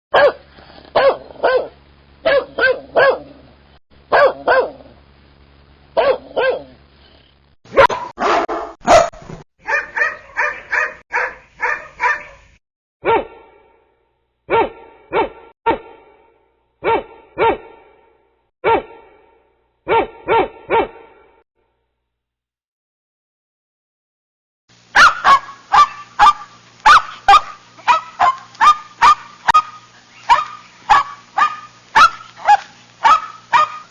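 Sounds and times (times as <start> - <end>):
dog barking: 0.1 - 3.3, 4.1 - 4.9, 6.0 - 6.8, 7.7 - 13.8, 14.5 - 18.0, 18.6 - 19.0, 19.9 - 21.1, 25.0 - 33.9.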